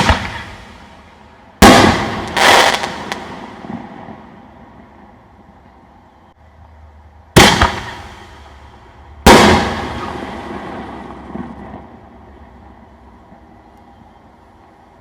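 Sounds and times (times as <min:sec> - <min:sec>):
firework shell booms: 0:00.0 - 0:00.9, 0:01.6 - 0:04.0, 0:07.4 - 0:08.4, 0:09.3 - 0:11.6.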